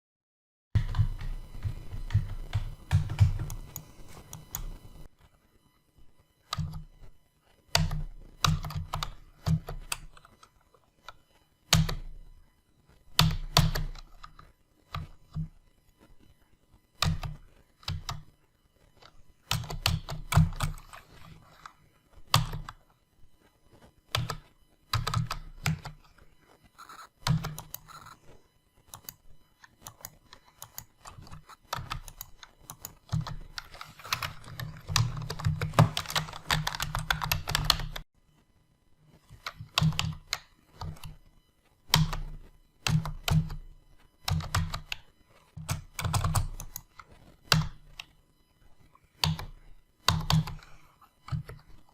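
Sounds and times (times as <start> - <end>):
computer keyboard typing: 0.8 - 5.1, 6.5 - 6.9, 7.7 - 10.5, 11.7 - 12.1, 13.2 - 15.5, 17.0 - 18.2, 19.4 - 21.7, 22.3 - 22.8, 24.1 - 26.0, 26.9 - 28.1, 28.9 - 29.2, 29.8 - 38.0, 39.3 - 41.2, 41.9 - 43.6, 44.2 - 48.1, 49.2 - 51.9.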